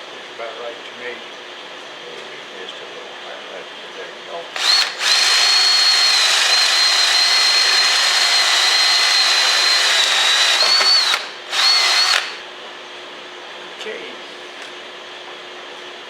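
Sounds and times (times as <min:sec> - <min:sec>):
electric drill whining: 0:04.6 - 0:12.5.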